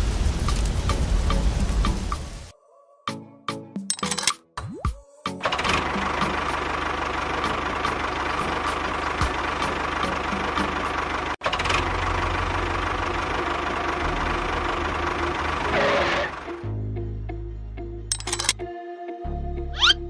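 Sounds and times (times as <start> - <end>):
engine running with knocking: 5.4 - 16.5.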